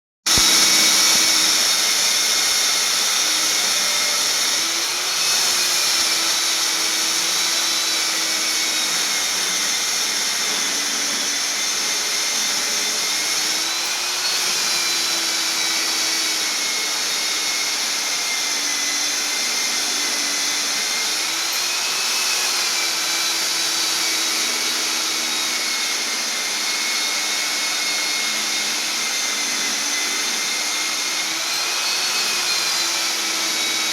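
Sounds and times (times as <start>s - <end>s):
concrete cutter motor whine: 0.3s - 33.9s.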